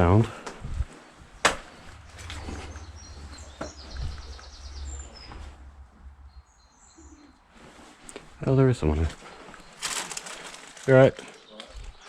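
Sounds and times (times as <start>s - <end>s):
birds chirping: 0.0s - 12.0s
low steady rumble: 0.7s - 7.0s.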